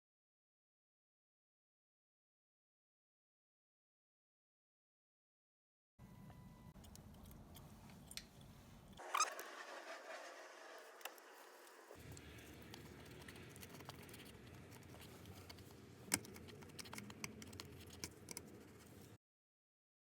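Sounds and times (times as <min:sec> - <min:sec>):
screwdriver clicks and taps: 0:15.5 - 0:18.5.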